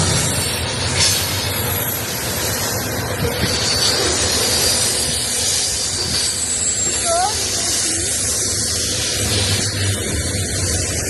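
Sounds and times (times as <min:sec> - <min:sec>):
freight train wheels on rails: 0:00.0 - 0:11.0.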